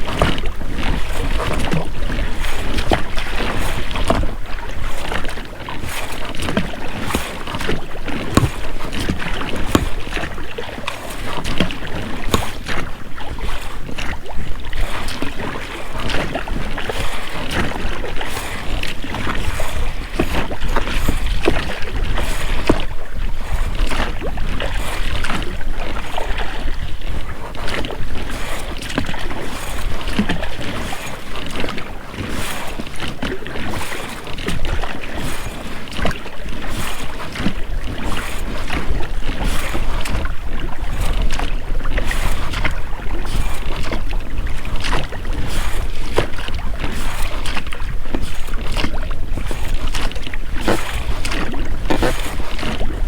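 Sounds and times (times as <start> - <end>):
oars splashing through water: 0.0 - 53.0
rowlocks knocking and creaking: 5.1 - 14.1.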